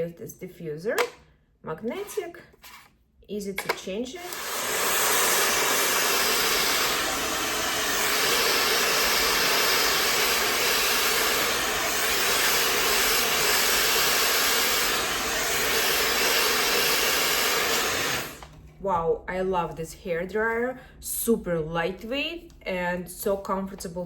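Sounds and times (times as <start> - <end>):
hair dryer blowing air: 3.7 - 18.6.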